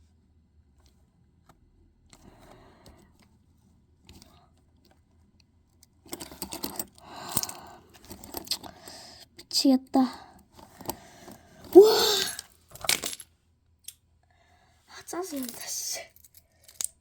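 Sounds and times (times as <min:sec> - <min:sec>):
key scraping in a lock: 0:06.1 - 0:09.0.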